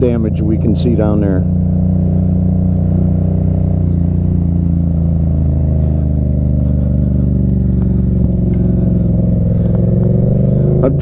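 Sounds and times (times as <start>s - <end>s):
vehicle engine droning: 0.0s - 11.0s.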